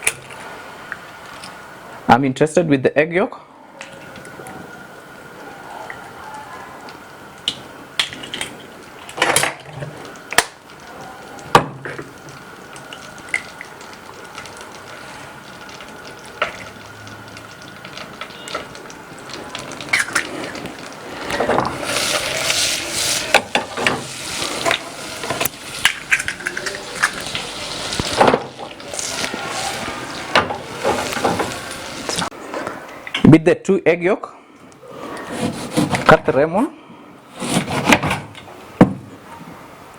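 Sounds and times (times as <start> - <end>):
beating egg yolks in bowl: 12.7 - 32.3.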